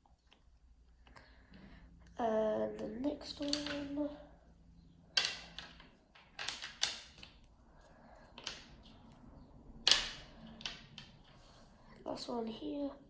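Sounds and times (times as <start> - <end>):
plastic cube pieces clicking: 3.3 - 3.9, 5.2 - 7.4, 8.3 - 9.0, 9.8 - 11.1.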